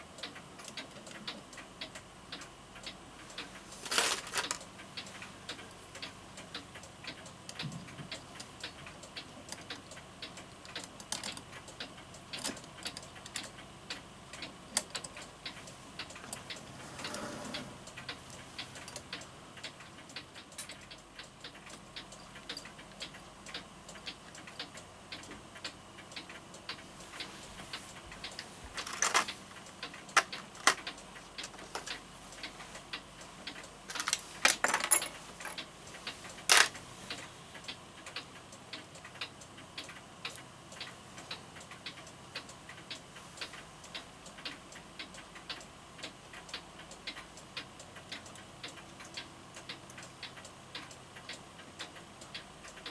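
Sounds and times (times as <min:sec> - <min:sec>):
clock ticking: 0:00.0 - 0:52.9
clock clicks and knocks: 0:28.3 - 0:36.8.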